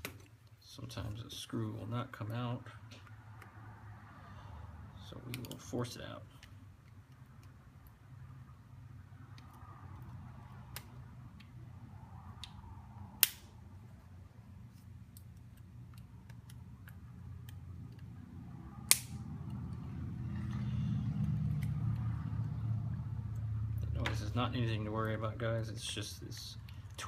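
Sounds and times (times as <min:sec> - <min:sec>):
tweezers snapping off screw: 0:13.2 - 0:13.5, 0:18.8 - 0:19.2.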